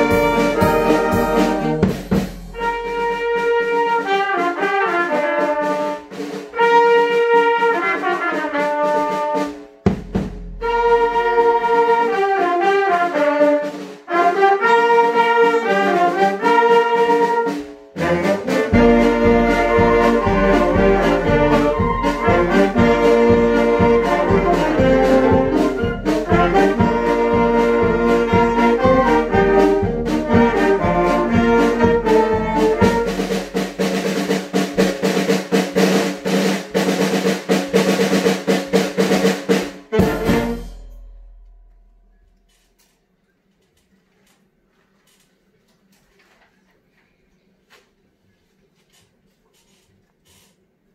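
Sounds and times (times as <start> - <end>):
drum beat: 0.0 - 4.0, 4.6 - 12.0, 16.0 - 42.3
brass band playing: 0.0 - 41.6
cymbals: 0.0 - 42.8.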